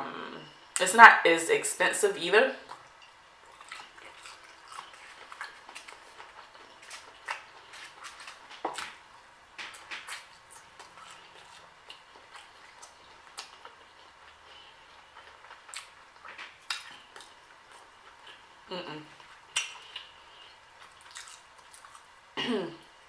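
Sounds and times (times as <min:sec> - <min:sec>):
person chewing with wet smacks: 0:02.7 - 0:09.0, 0:09.6 - 0:18.4, 0:19.1 - 0:22.1.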